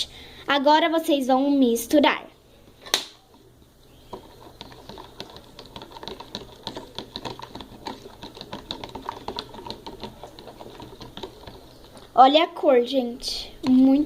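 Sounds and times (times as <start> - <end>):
utensil scraping container sides: 3.4 - 12.1.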